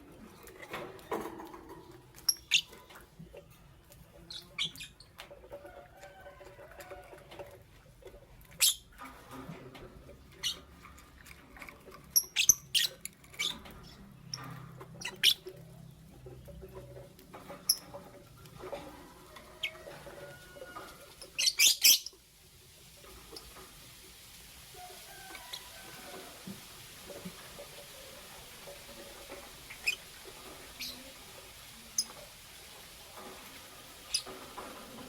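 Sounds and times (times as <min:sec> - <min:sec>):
lovebirds chirping: 0:02.1 - 0:02.8, 0:21.2 - 0:22.2, 0:29.6 - 0:31.2.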